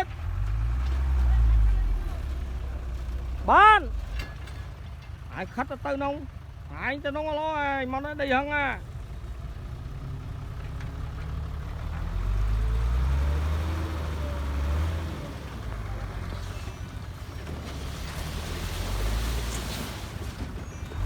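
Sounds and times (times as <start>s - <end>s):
heavy diesel engine revving: 0.0s - 4.3s, 9.4s - 20.2s.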